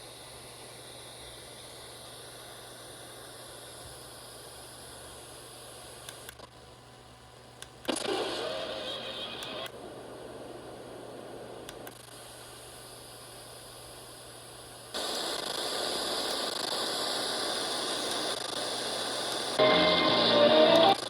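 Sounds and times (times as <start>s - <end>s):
radio static hissing: 15.0s - 21.0s.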